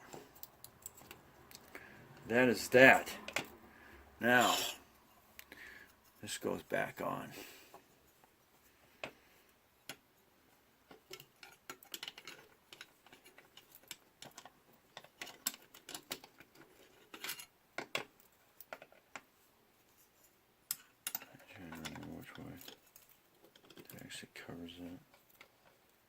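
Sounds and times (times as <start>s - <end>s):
plastic parts clicking and tapping: 3.2s - 3.5s, 10.8s - 19.3s, 20.7s - 24.0s.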